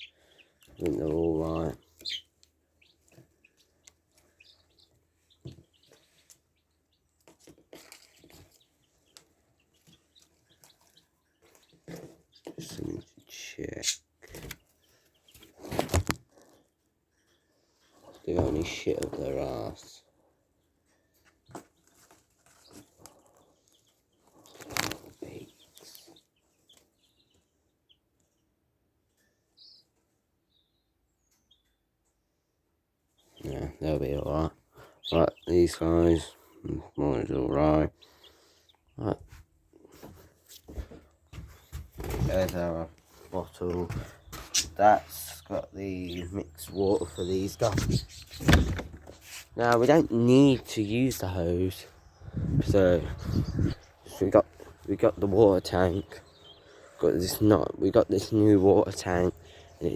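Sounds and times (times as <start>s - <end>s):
chicks peeping: 0.0s - 59.9s
rustling: 1.7s - 12.8s, 20.8s - 27.0s, 46.6s - 50.3s
soft knocks and rustles: 39.9s - 44.8s.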